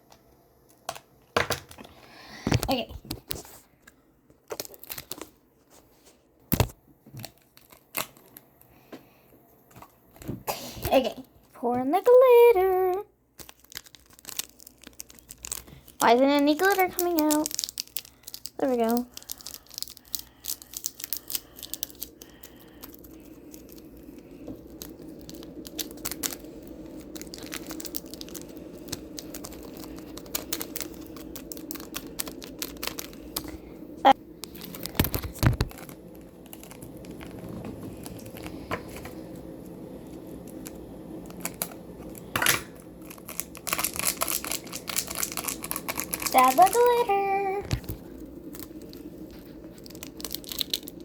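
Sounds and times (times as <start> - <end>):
plastic packaging crinkling: 1.7 - 9.2, 9.8 - 51.0.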